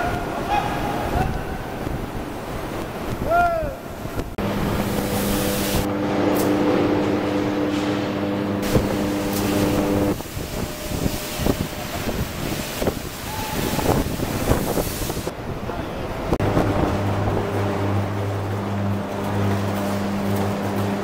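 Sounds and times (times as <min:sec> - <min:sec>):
electric furnace hum: 0:00.0 - 0:21.0
electric arc crackling: 0:04.1 - 0:15.3.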